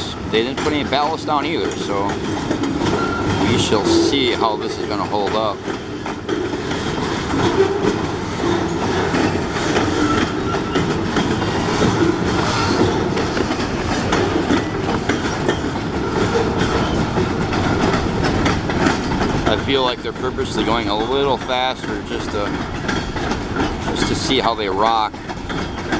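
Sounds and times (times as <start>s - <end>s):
freight train rumbling past: 0.0s - 25.9s
wheels clacking on rails: 0.0s - 25.9s.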